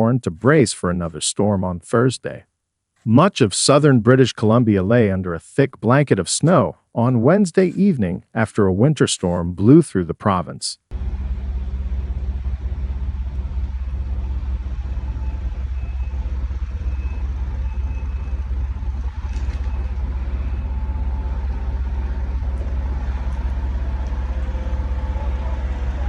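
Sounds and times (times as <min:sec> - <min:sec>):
motor vehicle engine rumbling: 0:10.9 - 0:26.0
faint traffic noise: 0:13.6 - 0:26.0.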